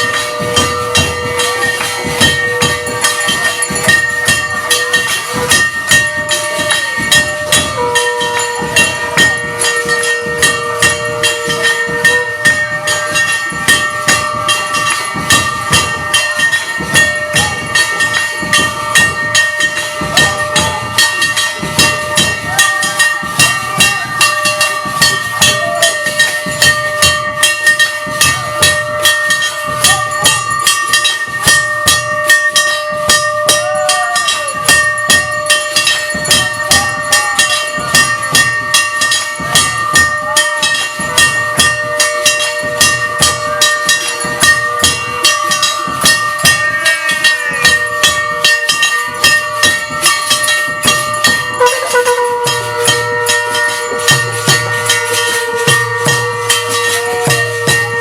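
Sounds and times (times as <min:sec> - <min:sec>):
bells and cymbals struck: 0:00.0 - 0:58.0
continuous ringing tone: 0:00.0 - 0:58.0
held tone: 0:00.0 - 0:58.0.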